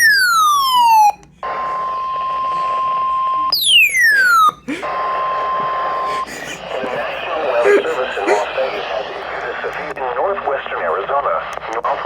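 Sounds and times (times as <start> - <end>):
steady alert beep: 3.6 - 4.6
radio static: 5.8 - 12.0.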